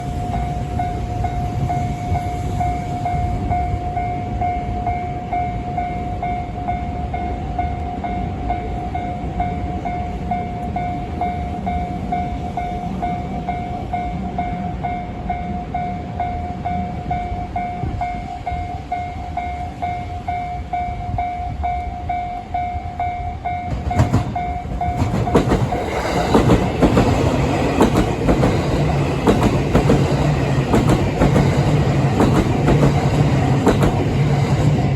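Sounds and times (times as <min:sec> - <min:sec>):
train wheels clattering: 0:23.6 - 0:34.9.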